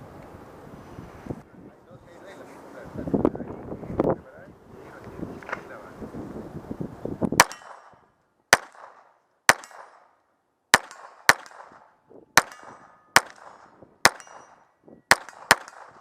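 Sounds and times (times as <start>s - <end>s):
pistol shots: 7.4s - 16.0s.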